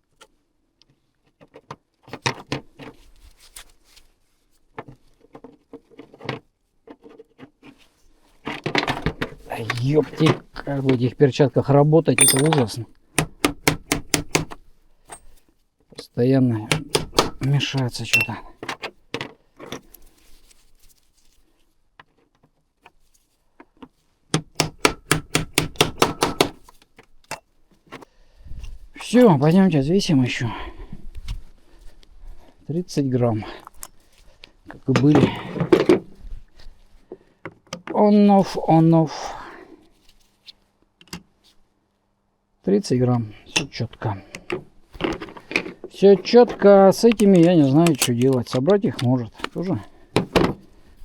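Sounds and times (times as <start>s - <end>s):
small parts clicking and rattling: 12.2s - 14.5s, 43.5s - 50.5s
hammer tapping on metal: 24.4s - 26.6s.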